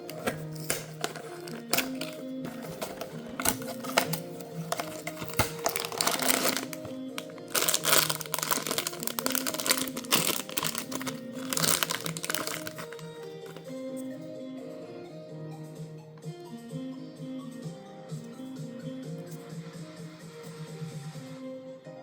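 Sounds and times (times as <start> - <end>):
packaging crinkling: 0.0 - 13.6
background music: 0.0 - 22.0.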